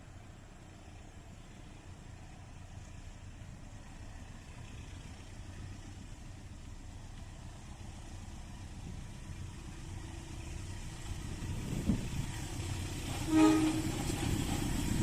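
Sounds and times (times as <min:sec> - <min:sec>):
train rumbling: 0:00.0 - 0:15.0
train horn blast: 0:13.0 - 0:14.4.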